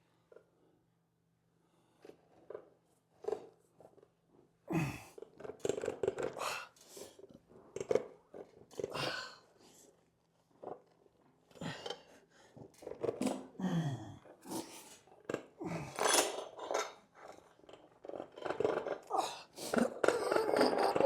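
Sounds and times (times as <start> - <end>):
man grunting and groaning: 4.7 - 5.2, 13.6 - 14.2.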